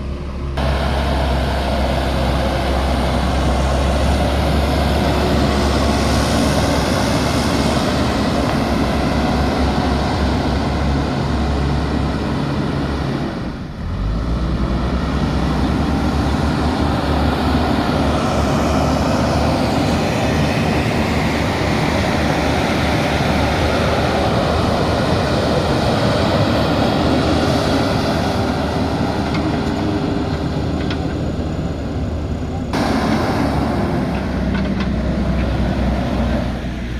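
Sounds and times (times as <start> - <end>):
diesel engine rumble: 0.0 - 36.9
grinding machinery: 0.6 - 36.9.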